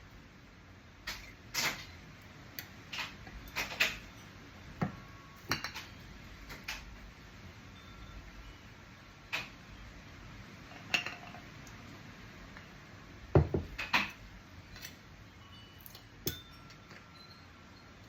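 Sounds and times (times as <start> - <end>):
metal knife tapping glass jar: 16.3 - 16.8.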